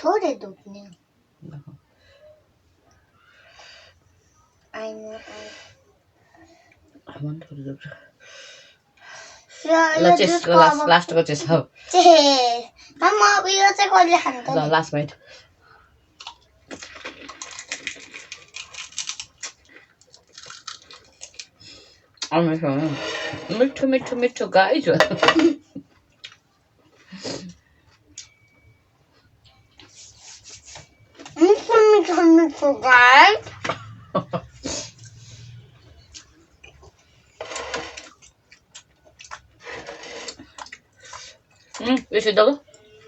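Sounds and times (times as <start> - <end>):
person chewing food: 16.2 - 21.6, 38.1 - 41.8.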